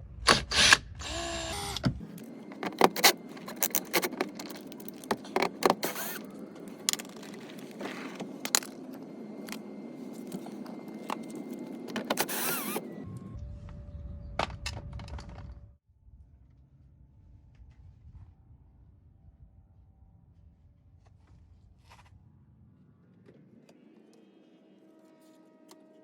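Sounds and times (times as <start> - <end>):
power driver whirring: 0.2 - 14.0.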